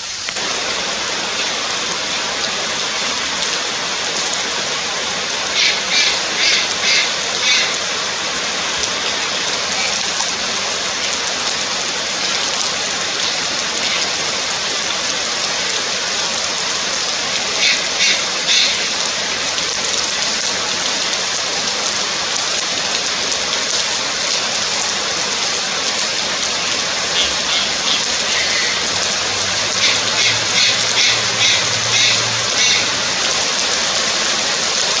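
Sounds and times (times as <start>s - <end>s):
loud steady hiss: 0.0s - 20.8s
heron calling high notes: 5.4s - 8.0s, 17.4s - 19.1s, 26.5s - 33.2s.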